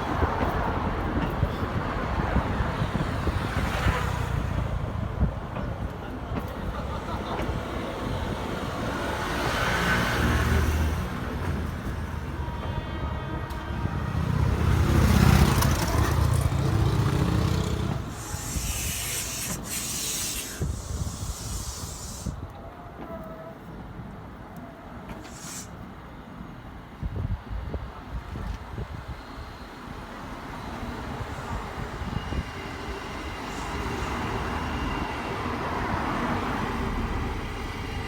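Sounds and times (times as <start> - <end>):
hiss: 17.9 - 22.4, 25.1 - 25.8, 33.1 - 34.8.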